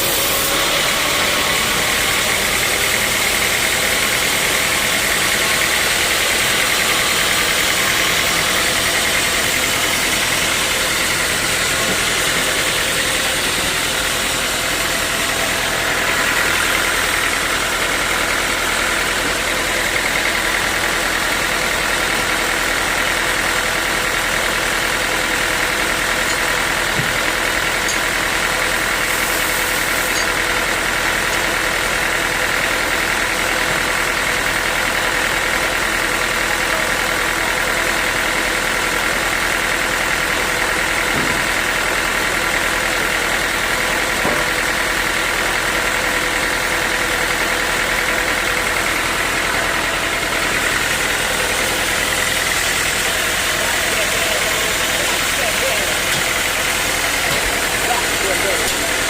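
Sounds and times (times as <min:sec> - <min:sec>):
high machine whine: 0:00.0 - 0:23.6
sawmill machine drone: 0:00.0 - 0:59.0.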